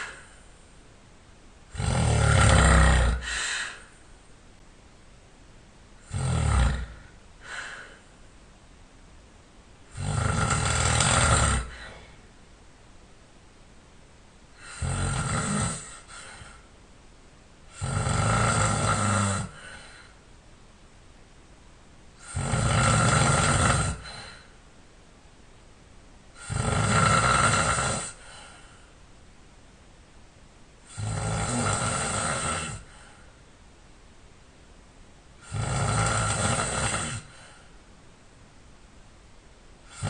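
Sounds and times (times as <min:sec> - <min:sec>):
man snoring: 0:01.7 - 0:03.9, 0:06.0 - 0:07.9, 0:09.9 - 0:12.0, 0:14.6 - 0:16.6, 0:17.7 - 0:19.9, 0:22.2 - 0:24.5, 0:26.4 - 0:28.4, 0:30.9 - 0:32.9, 0:35.4 - 0:37.4.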